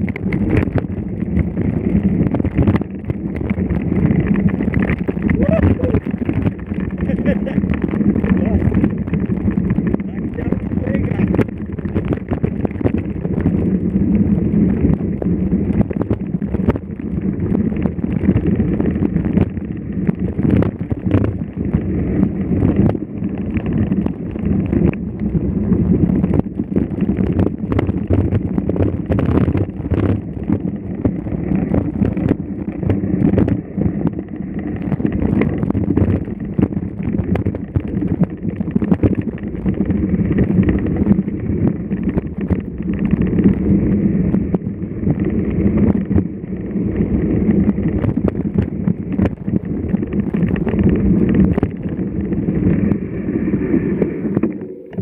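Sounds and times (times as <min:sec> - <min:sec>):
wind buffeting microphone: 0:00.0 - 0:55.0.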